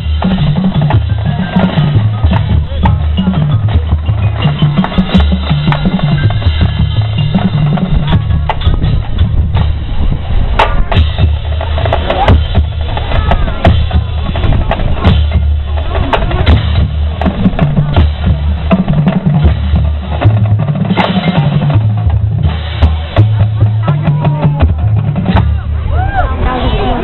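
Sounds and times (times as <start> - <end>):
bass held low notes: 0.0 - 27.0
drums hitting: 0.0 - 27.0.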